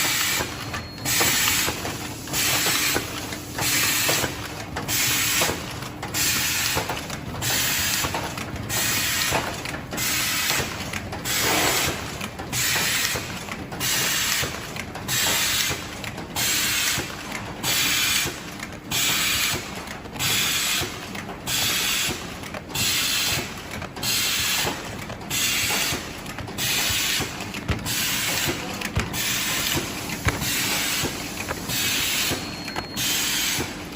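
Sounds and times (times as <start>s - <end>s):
mechanical hum: 0.0s - 33.9s
machine hiss bursts: 29.2s - 33.7s.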